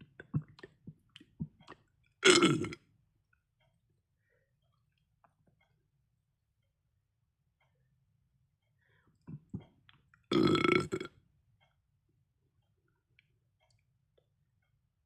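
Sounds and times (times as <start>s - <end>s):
person burping: 2.2s - 2.8s, 10.3s - 11.1s.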